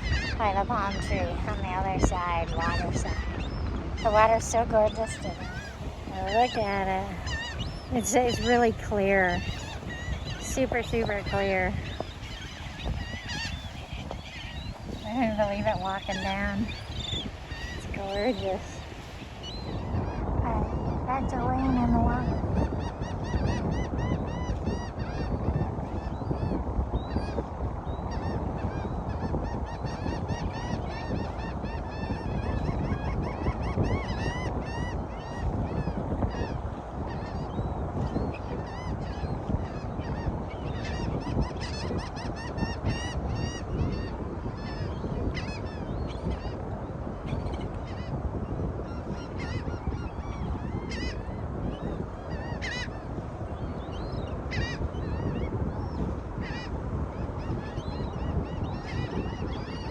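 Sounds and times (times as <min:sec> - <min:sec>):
flock of birds calling: 0:00.0 - 0:59.9
wind: 0:00.0 - 0:59.9.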